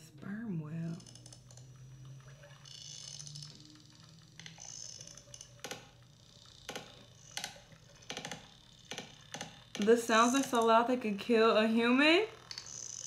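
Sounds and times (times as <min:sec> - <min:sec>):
sperm whale clicks: 0:03.2 - 0:10.8.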